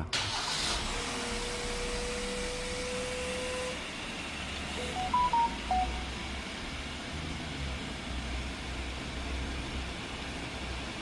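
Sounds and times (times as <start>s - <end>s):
beeps stepping in pitch: 4.8s - 6.2s
steady electronic tone: 4.8s - 6.3s.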